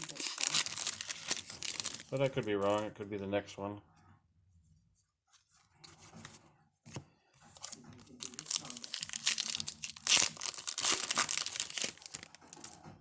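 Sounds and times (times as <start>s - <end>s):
wrapper tearing and crinkling: 0.0s - 2.9s, 7.5s - 12.8s.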